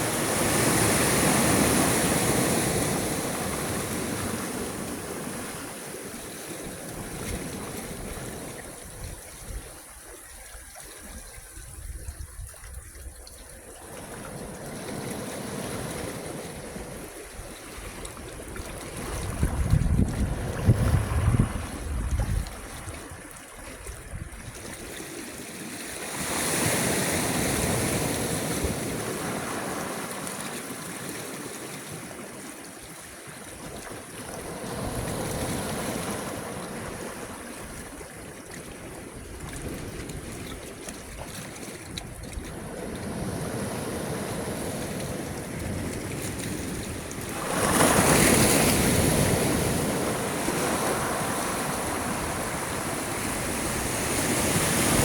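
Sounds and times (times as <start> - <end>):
sea waves breaking: 0.0 - 10.2, 13.8 - 55.0.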